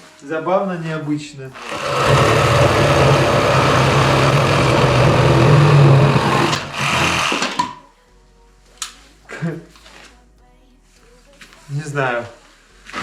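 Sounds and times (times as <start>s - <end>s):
reciprocating saw sawing: 1.6s - 7.7s.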